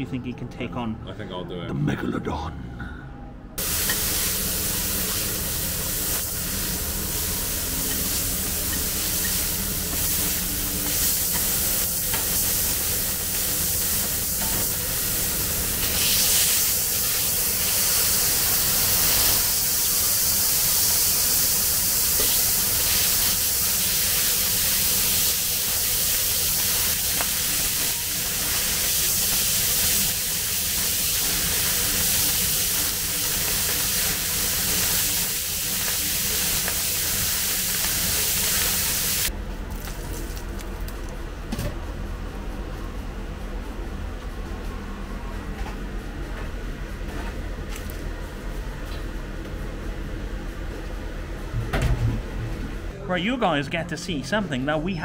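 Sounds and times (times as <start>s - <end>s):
low hum: 0.0s - 3.7s
patties sizzling on griddle: 3.6s - 39.3s.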